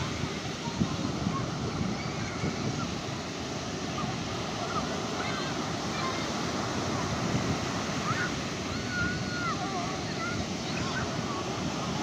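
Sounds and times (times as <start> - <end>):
sea waves washing onto beach: 0.0 - 12.0.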